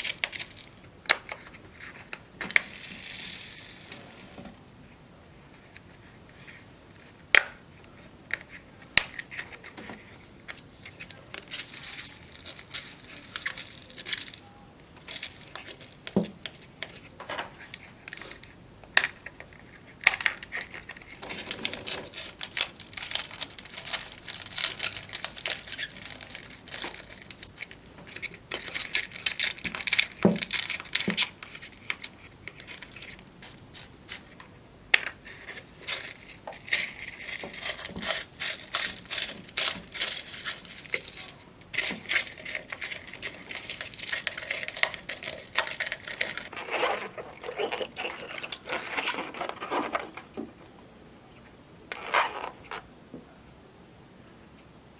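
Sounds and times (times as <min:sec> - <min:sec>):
slime crackling and popping: 0:21.9 - 0:33.7, 0:36.7 - 0:50.2.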